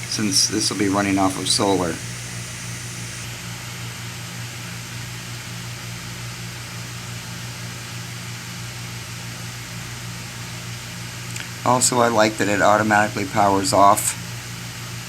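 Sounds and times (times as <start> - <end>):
faint hiss: 0.0 - 3.3
low hum: 0.0 - 3.3.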